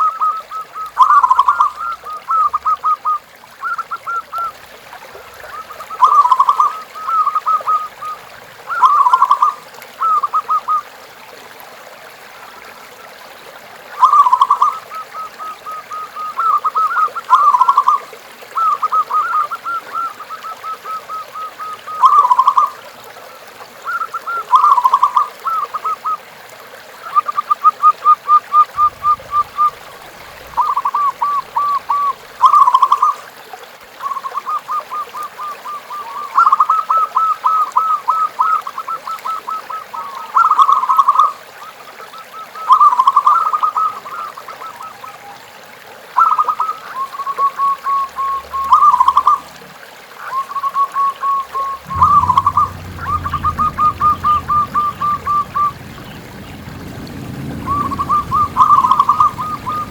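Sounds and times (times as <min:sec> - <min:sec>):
low rumble: 0:28.8 - 0:32.4, 0:51.5 - 0:59.9
doves cooing: 0:28.8 - 0:33.1, 0:51.3 - 0:59.9.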